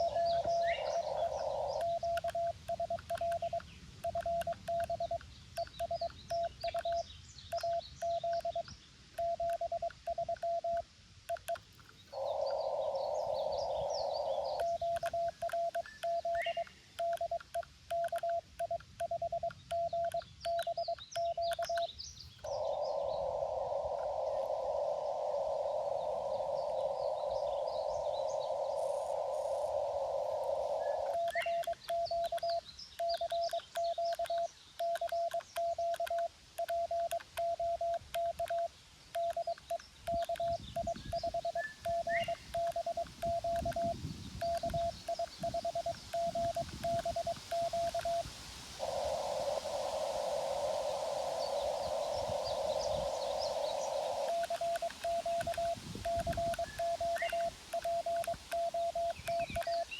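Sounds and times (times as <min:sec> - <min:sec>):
morse code beeps: 0:00.0 - 0:11.6, 0:14.4 - 0:21.9, 0:30.8 - 0:48.3, 0:54.2 - 0:59.9
radio band hiss: 0:44.5 - 0:59.9.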